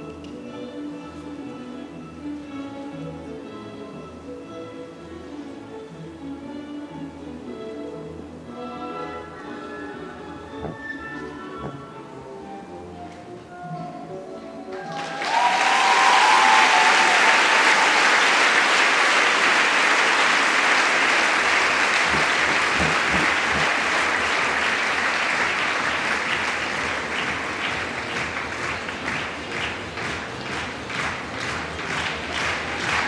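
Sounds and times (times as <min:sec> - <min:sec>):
large audience applauding: 0:14.7 - 0:33.0.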